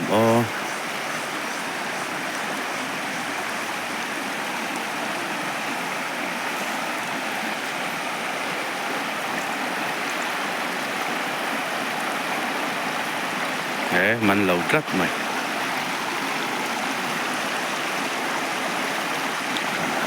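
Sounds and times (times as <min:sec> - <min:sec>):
river water rushing: 0:00.0 - 0:20.0.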